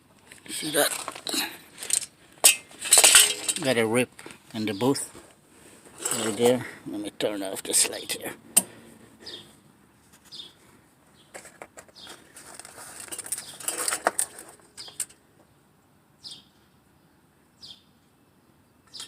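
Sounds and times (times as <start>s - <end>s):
rustling: 0.0s - 6.8s, 10.0s - 15.2s
small bird chirping: 10.2s - 11.3s, 14.7s - 15.1s, 16.2s - 19.0s.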